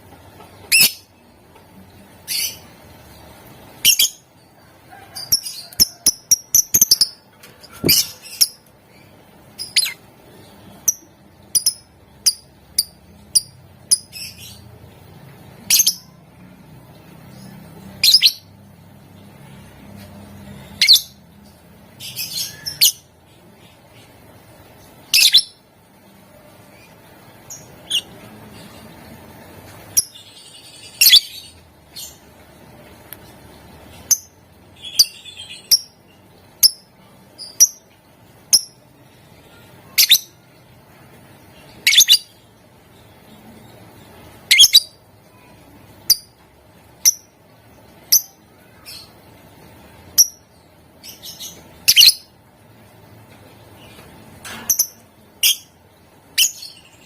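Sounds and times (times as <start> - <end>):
lovebird chirping: 0.7 - 1.1, 5.2 - 14.6, 17.4 - 18.5, 25.1 - 25.6, 30.0 - 32.2, 34.0 - 37.9, 39.8 - 40.5, 41.7 - 42.5, 43.3 - 45.0, 47.0 - 47.4, 50.1 - 52.4, 54.7 - 57.0.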